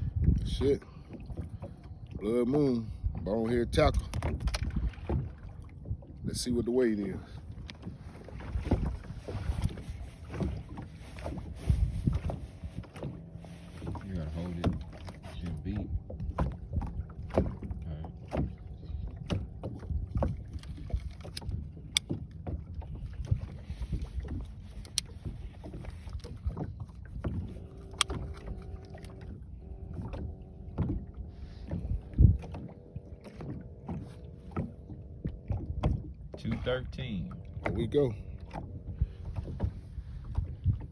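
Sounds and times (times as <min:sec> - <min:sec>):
knocks and thumps in a boat: 0:00.0 - 0:40.9
low steady rumble: 0:00.0 - 0:40.9
faint hum: 0:27.2 - 0:39.4.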